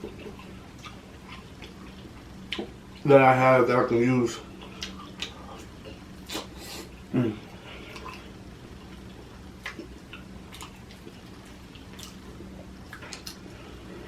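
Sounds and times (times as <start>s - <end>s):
chewing smacks and clicks: 0.0s - 3.0s, 4.6s - 6.4s, 7.9s - 13.5s
low hum: 0.0s - 14.0s.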